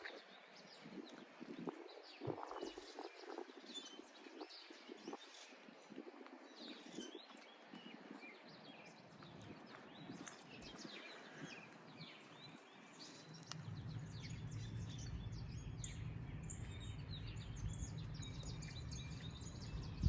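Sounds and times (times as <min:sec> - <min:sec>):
songbirds chirping and singing: 0:00.0 - 0:20.0
steady low rumble: 0:12.5 - 0:20.0.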